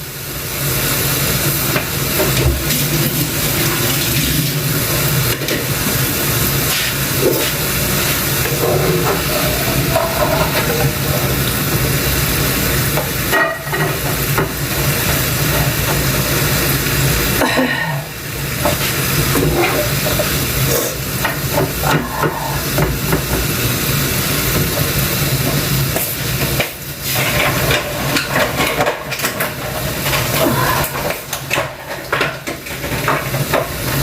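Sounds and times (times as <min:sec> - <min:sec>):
steady hiss: 0:00.1 - 0:31.8
kitchen knocks and clicks: 0:31.0 - 0:33.8.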